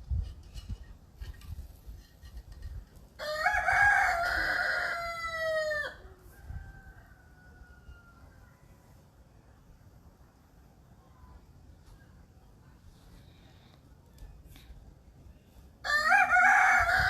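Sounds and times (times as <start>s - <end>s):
rooster crowing: 3.2s - 8.5s, 15.8s - 17.0s.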